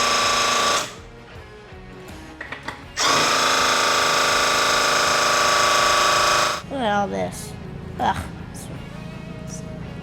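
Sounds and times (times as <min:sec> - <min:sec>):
drill spinning with high whine: 0:00.0 - 0:01.0, 0:03.0 - 0:06.6.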